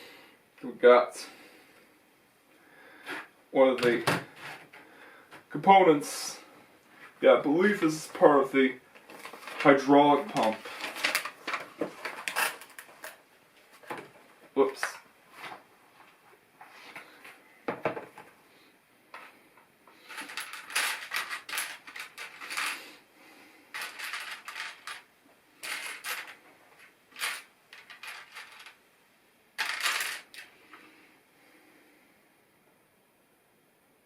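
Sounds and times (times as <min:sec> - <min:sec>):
plastic bricks clattering: 0:09.0 - 0:13.2, 0:20.0 - 0:22.9, 0:23.7 - 0:28.8, 0:29.6 - 0:30.6.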